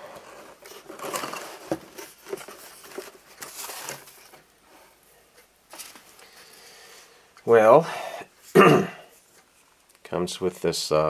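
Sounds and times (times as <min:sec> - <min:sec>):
packaging rustling and crinkling: 0:00.1 - 0:04.6, 0:05.7 - 0:06.4.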